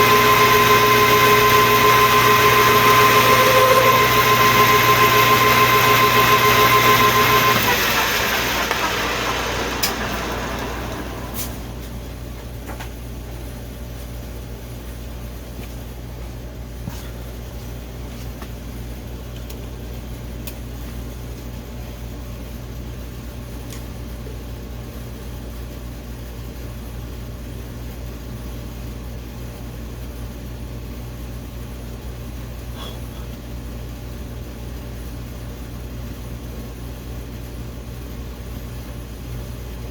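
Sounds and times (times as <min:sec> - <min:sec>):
metal lathe whining: 0:00.0 - 0:11.8.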